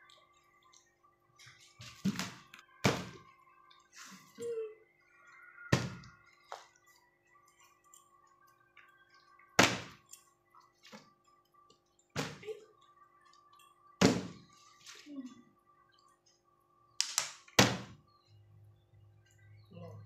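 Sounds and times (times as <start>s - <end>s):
plastic bottle landing thunk: 2.0s - 3.2s, 9.6s - 10.0s, 14.0s - 14.4s.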